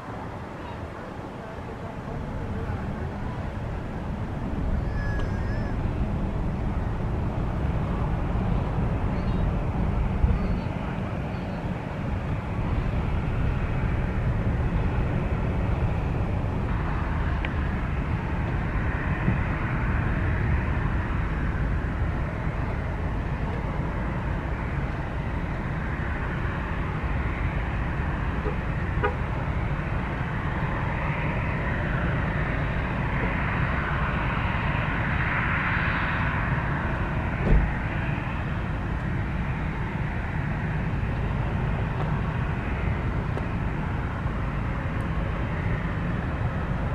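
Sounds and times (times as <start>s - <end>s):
jet engine rumble and hiss: 0.0s - 46.9s
short thump: 37.4s - 37.7s.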